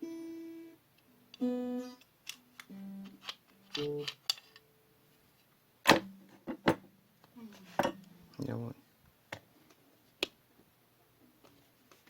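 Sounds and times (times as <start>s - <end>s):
pitched musical notes: 1.4s - 2.0s, 2.7s - 4.1s.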